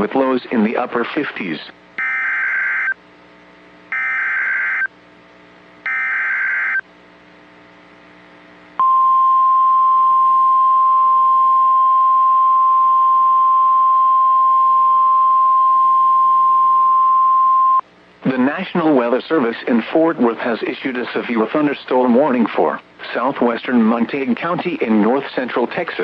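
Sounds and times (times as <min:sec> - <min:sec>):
single-pitch warning alarm tone: 0:02.0 - 0:03.0, 0:03.9 - 0:04.9, 0:05.8 - 0:06.8
data bursts: 0:05.9 - 0:06.8.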